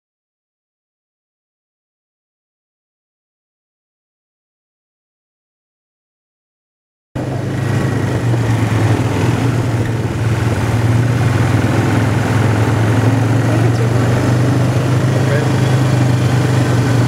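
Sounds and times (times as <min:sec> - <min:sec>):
atv engine running: 0:07.2 - 0:17.0
constant rushing noise: 0:07.2 - 0:17.0.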